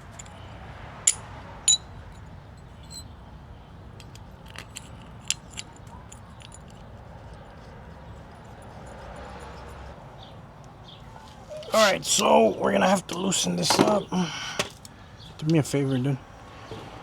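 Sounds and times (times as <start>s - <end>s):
ringing metallic clinks: 1.0s - 3.1s.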